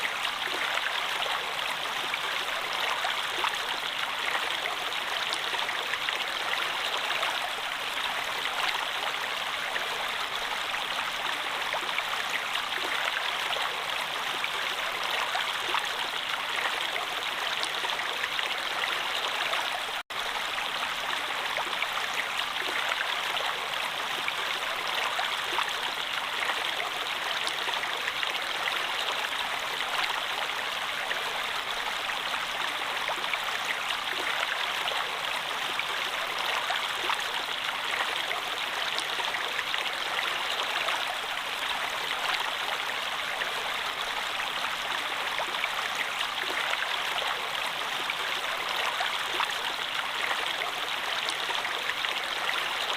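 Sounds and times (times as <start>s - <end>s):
flowing water rushing: 0.0s - 52.9s.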